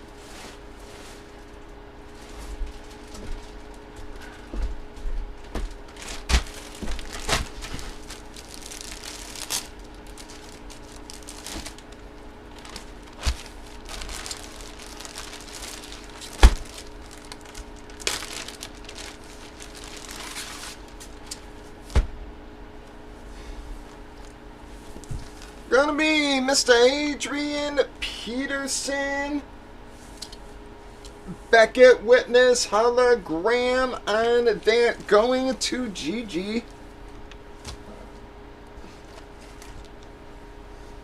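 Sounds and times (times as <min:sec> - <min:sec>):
plastic packaging crinkling: 0:00.2 - 0:03.9, 0:05.4 - 0:21.9, 0:23.8 - 0:25.7.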